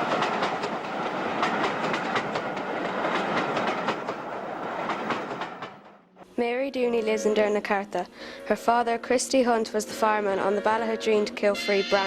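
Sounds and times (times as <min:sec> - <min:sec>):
train wheels clicking on rails: 0:00.0 - 0:06.0.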